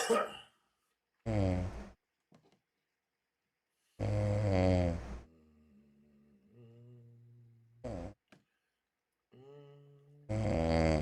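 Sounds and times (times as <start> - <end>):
person snoring: 4.0 - 8.2, 9.3 - 11.0.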